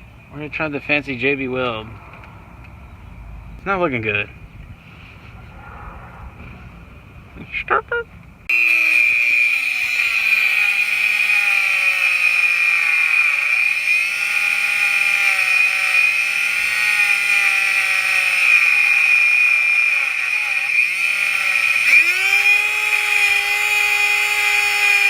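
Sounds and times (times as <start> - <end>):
rotary tool cutting metal: 8.5 - 25.0.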